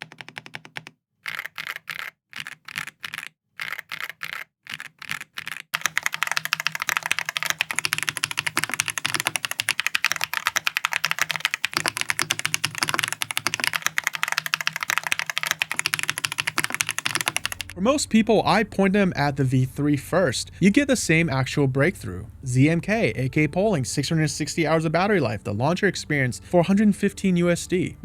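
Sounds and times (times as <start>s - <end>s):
mechanical keyboard typing: 0.0s - 17.8s.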